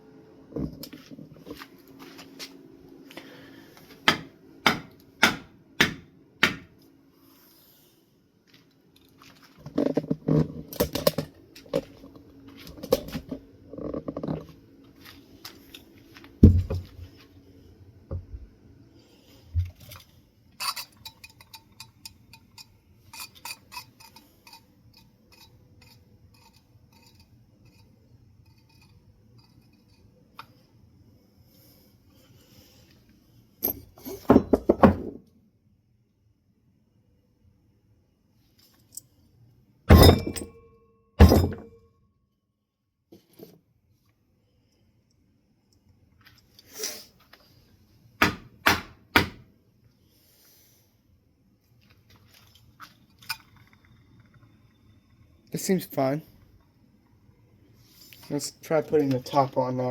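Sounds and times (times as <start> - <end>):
metal parts clinking and knocking: 19.8 - 27.9, 39.9 - 40.6, 41.2 - 41.8.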